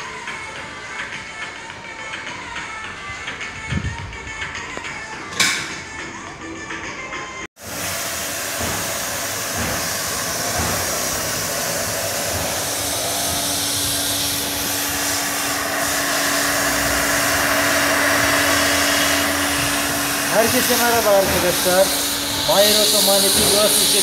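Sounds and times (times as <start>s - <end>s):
hot-air gun blowing: 7.6s - 24.0s.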